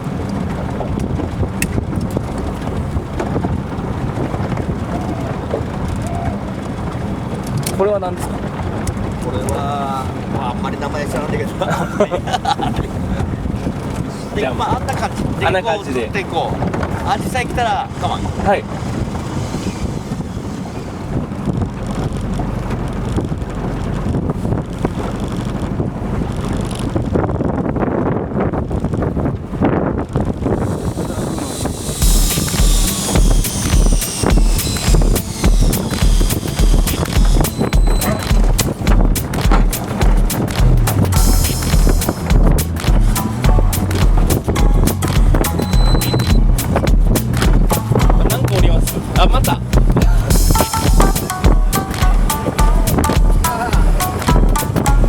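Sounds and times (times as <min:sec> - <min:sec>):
boat engine rumble: 0:00.0 - 0:55.0
wind buffeting microphone: 0:00.0 - 0:55.0
sharp clicks: 0:30.6 - 0:48.6.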